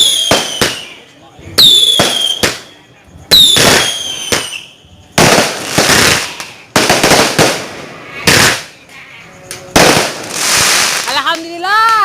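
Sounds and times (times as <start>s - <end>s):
firework whistle: 0.0s - 7.1s
firework bangs: 0.0s - 12.0s
firework crackling: 0.0s - 12.0s.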